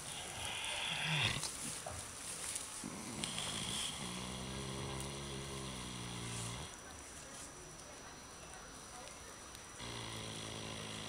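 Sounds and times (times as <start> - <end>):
pigs snoring: 0.0 - 1.5, 2.8 - 6.8, 9.8 - 11.0.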